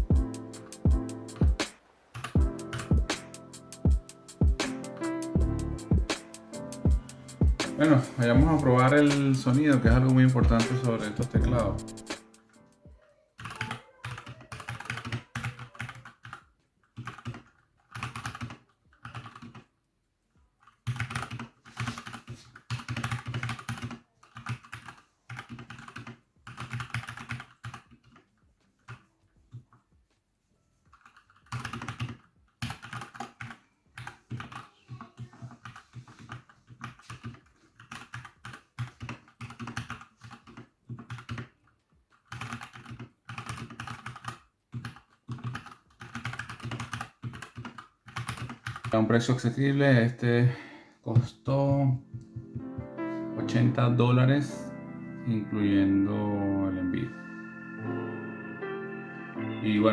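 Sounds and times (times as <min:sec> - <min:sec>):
mechanical keyboard typing: 0:00.0 - 0:05.0, 0:07.0 - 0:12.5, 0:13.4 - 0:19.7, 0:20.6 - 0:28.2, 0:30.9 - 0:49.0.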